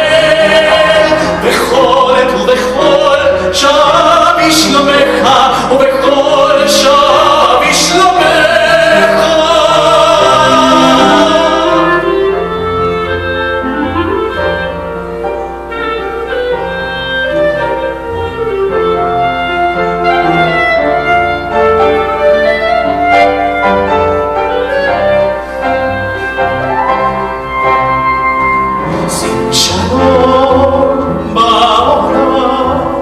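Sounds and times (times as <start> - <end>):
clarinet melody: 0.0 - 33.0
piano chords: 0.0 - 33.0.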